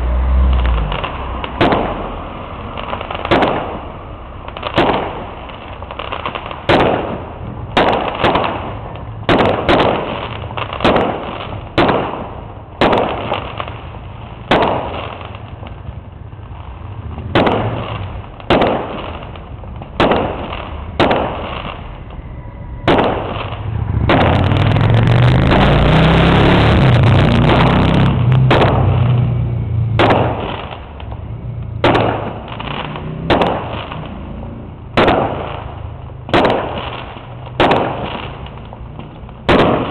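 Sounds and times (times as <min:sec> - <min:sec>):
fireworks bursting with bangs: 0:00.5 - 0:39.9
loud rushing noise with rumble: 0:16.8 - 0:36.8.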